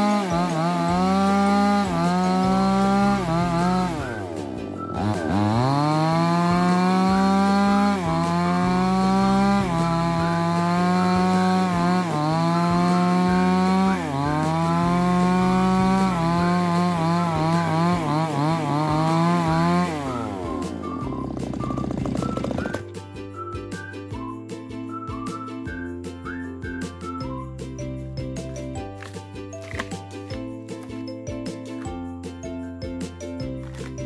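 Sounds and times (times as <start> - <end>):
chainsaw cutting wood: 0.0 - 23.0, 28.4 - 31.2, 31.8 - 32.0, 33.6 - 34.0.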